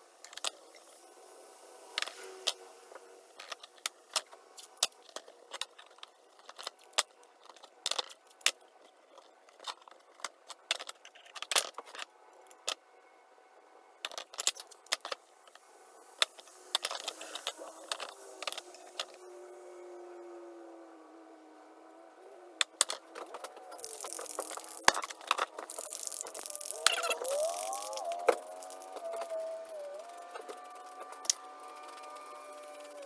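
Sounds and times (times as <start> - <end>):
metal parts clinking: 22.8 - 33.0.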